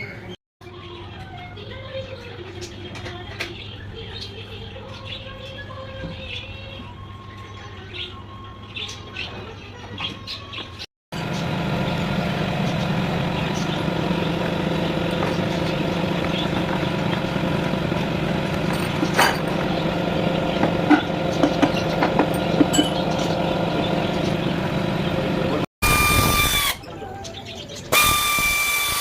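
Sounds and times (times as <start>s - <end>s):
machine humming: 11.1s - 26.9s, 27.9s - 29.0s.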